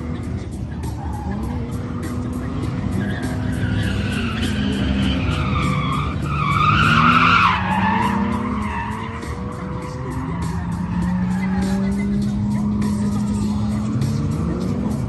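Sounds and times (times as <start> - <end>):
car engine revving high: 0.0 - 15.0
tires screeching: 0.0 - 15.0.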